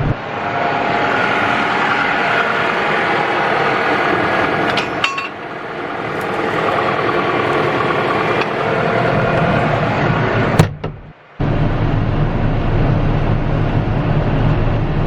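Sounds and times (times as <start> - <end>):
loader engine running: 0.0 - 15.0
sharp metal clank: 4.6 - 5.4
metallic clinks: 4.7 - 5.4.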